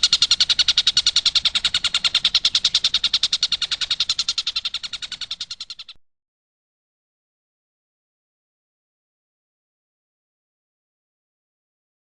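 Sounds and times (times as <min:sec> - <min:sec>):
kingfisher rattling chatter: 0:00.0 - 0:06.0.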